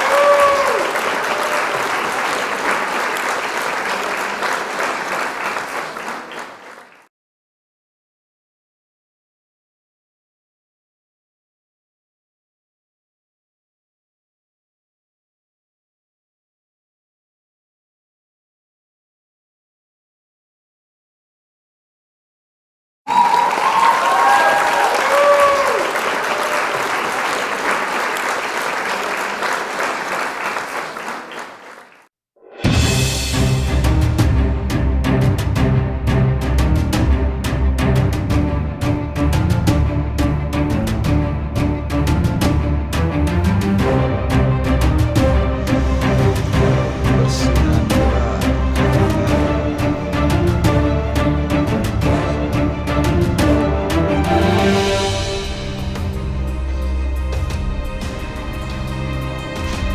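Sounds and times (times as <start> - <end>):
crowd applauding: 0.0 - 7.1, 23.1 - 32.1.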